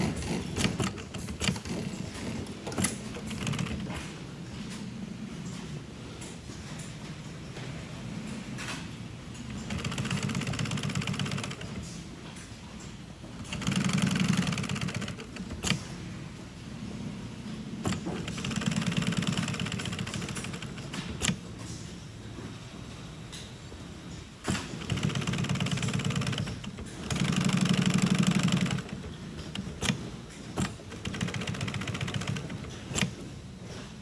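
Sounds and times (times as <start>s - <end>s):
sewing machine stitching: 0.0s - 4.1s, 9.5s - 12.0s, 13.3s - 16.1s, 17.8s - 21.5s, 24.4s - 33.9s.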